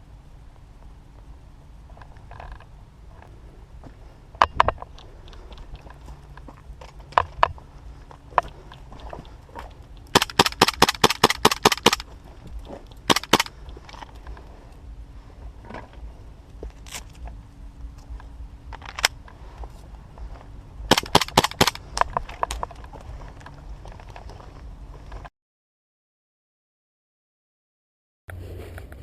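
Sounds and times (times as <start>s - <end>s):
airsoft rifle shots: 10.1s - 12.1s, 13.1s - 13.5s, 20.9s - 21.8s.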